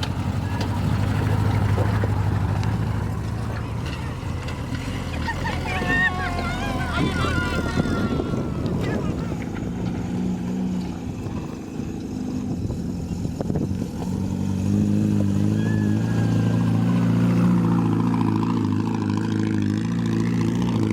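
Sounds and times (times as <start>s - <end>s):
jeep engine running: 0.0s - 20.9s.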